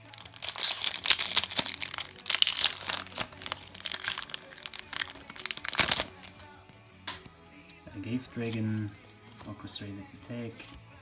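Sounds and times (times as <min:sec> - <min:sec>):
foil wrapper crinkling: 0:00.0 - 0:06.5.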